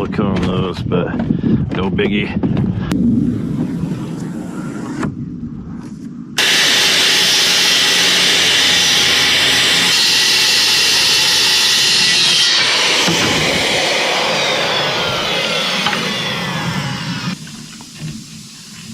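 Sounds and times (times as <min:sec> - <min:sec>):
low rumble: 0:00.7 - 0:17.4
loud steady machine noise: 0:06.4 - 0:18.1.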